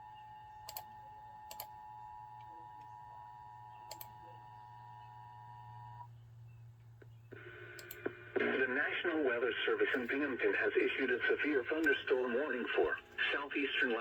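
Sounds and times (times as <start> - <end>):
faint low hum: 0.0 - 14.0.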